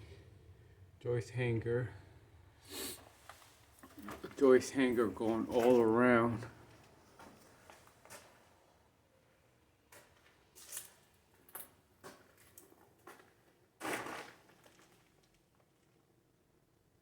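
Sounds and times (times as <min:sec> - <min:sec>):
faint scuffs and rustles: 0:05.2 - 0:08.6.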